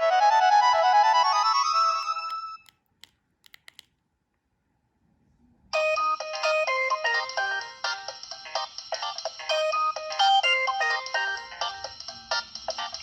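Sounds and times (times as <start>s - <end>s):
phone ringtone melody: 5.8s - 8.2s, 9.0s - 13.0s.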